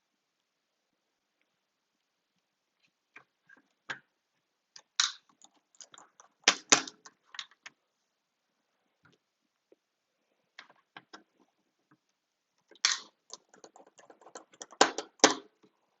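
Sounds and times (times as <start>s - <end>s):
small tools clicking and tapping: 12.6s - 15.5s.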